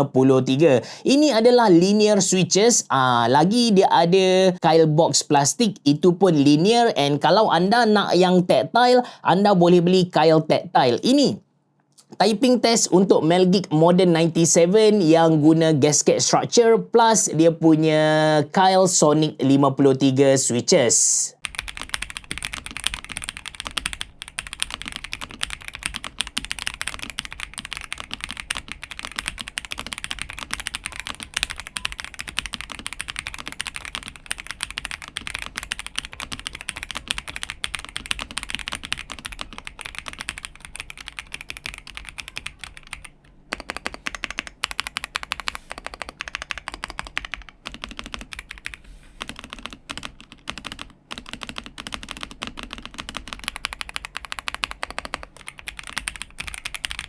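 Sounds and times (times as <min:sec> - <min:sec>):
mechanical keyboard typing: 0:21.4 - 0:57.0.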